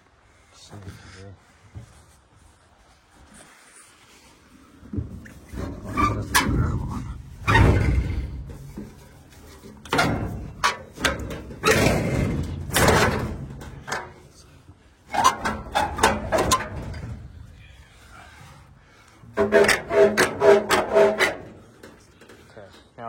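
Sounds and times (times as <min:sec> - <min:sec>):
scraping: 0:02.9 - 0:23.0
metal knocks and clunks: 0:04.9 - 0:14.4, 0:15.1 - 0:17.6, 0:19.3 - 0:23.0.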